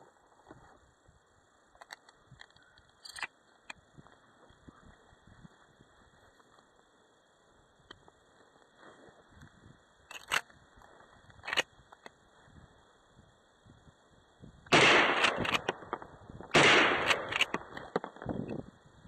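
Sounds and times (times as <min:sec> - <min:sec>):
shotgun shots: 0:14.7 - 0:17.8
mechanical clicks: 0:15.2 - 0:15.9, 0:17.0 - 0:17.9.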